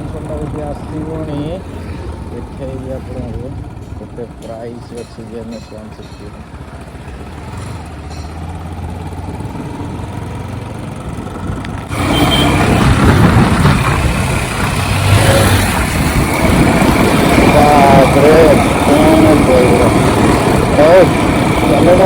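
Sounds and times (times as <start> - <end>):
motorcycle engine humming: 0.0 - 22.0
loud rushing noise: 11.9 - 22.0.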